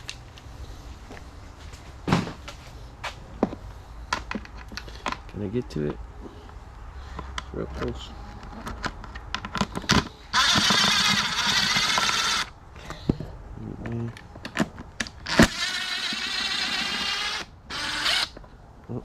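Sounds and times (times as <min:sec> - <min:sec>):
handling clicks and knocks: 0:03.4 - 0:06.0, 0:07.1 - 0:10.7
power driver backing out screws: 0:09.6 - 0:12.5, 0:14.5 - 0:18.4.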